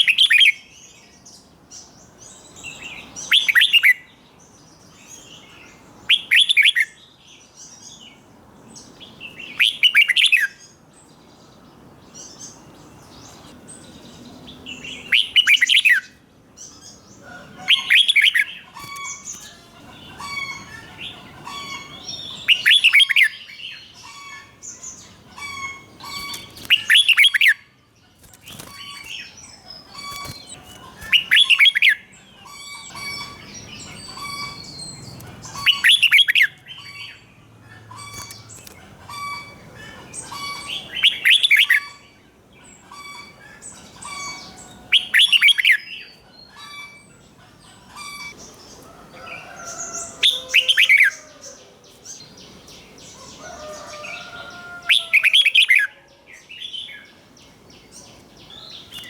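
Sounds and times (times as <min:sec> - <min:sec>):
bird song phrases: 0:00.0 - 0:59.0
soft bird chirps: 0:11.2 - 0:55.8.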